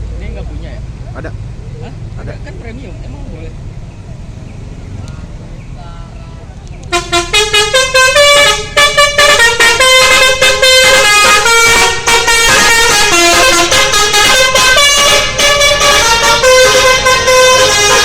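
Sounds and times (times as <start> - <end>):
multi-tone bus horn melody: 6.8 - 18.0.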